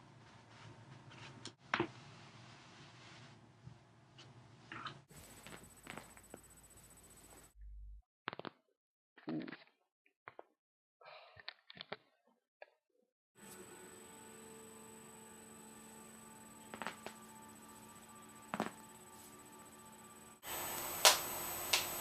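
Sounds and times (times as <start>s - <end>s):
electrical hum: 13.4s - 22.0s.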